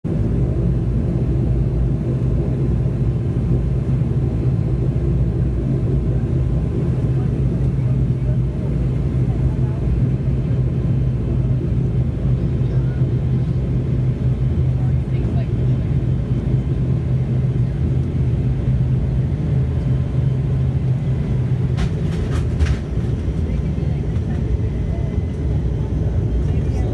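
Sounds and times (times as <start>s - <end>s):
turboprop engine drone in cabin: 0.0s - 26.9s
constant low hum: 0.1s - 26.9s.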